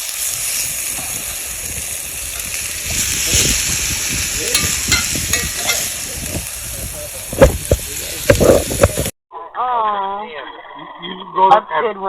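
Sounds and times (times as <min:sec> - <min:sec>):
food sizzling on a grill: 0:00.0 - 0:09.2.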